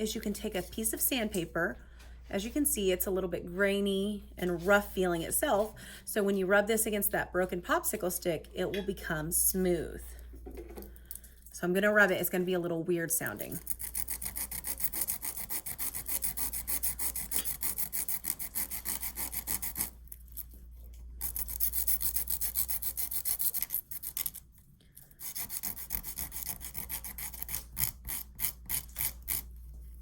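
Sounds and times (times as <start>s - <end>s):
sandpaper scratching wood: 13.7s - 19.9s, 21.2s - 24.4s, 25.2s - 29.5s.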